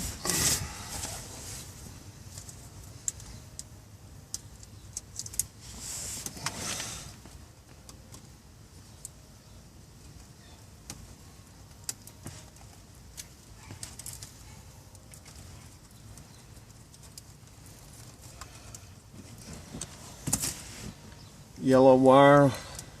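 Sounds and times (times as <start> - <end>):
hands handling wiring and tools: 4.3 - 8.4, 10.8 - 21.3.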